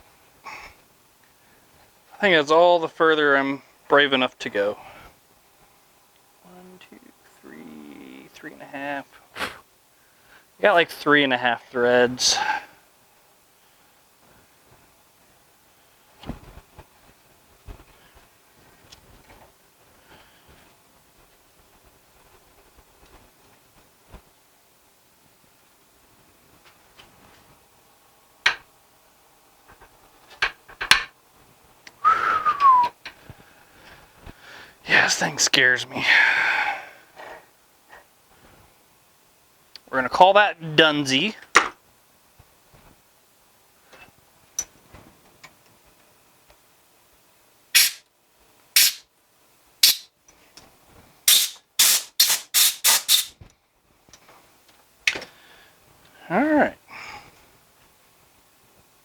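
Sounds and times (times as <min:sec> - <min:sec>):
air blow gun hissing blasts: 0:47.8 - 0:48.0, 0:48.8 - 0:49.0, 0:49.8 - 0:50.1, 0:51.3 - 0:53.4.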